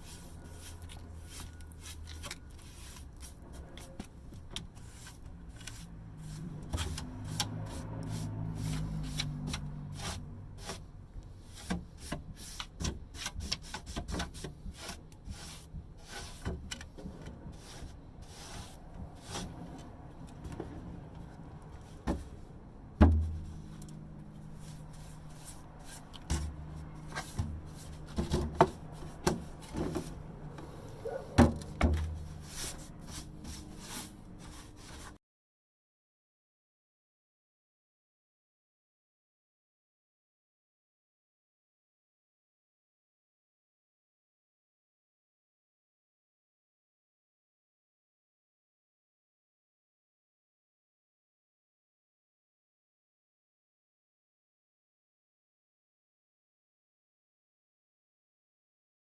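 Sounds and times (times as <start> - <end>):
rubbing and scraping on wood: 0.0 - 35.2.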